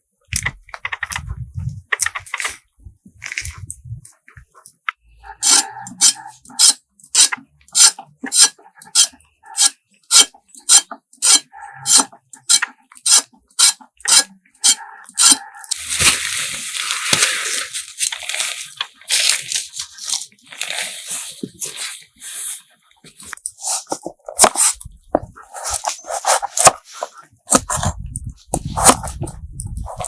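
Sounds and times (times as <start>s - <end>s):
scraping and rustling: 0.3s - 6.4s, 14.7s - 30.0s
knife cutting crisp vegetables: 5.3s - 30.0s.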